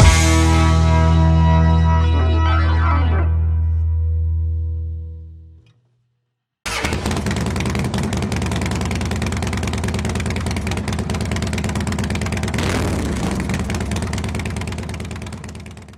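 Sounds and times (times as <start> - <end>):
music: 0.0 - 5.6
motorcycle engines idling: 6.7 - 15.9.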